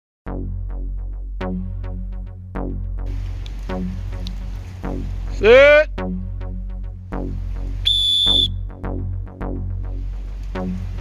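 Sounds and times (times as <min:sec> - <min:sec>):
electronic music with bass and beat: 0:03.1 - 0:08.8.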